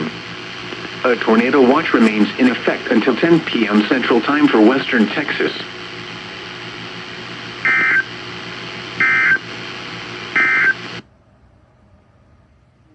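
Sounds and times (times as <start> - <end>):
steady radio hiss: 0.0 - 12.9
short digital data bursts: 9.0 - 9.4.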